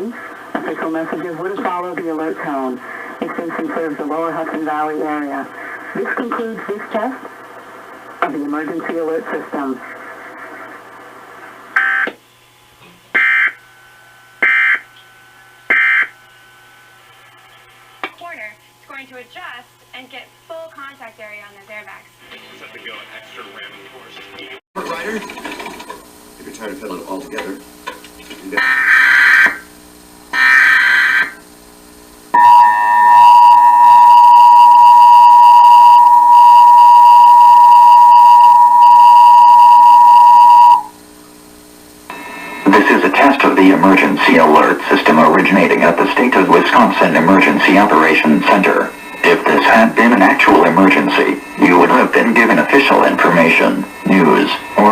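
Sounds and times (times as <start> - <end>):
harsh digital tone bursts: 13.1 - 13.6, 14.4 - 14.9
warbling data burst: 14.4 - 15.0
two-tone attention signal: 32.4 - 40.9.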